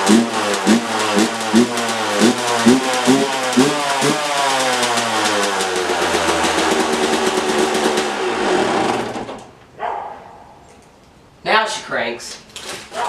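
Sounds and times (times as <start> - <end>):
two-stroke dirt bike engine: 0.0 - 9.4.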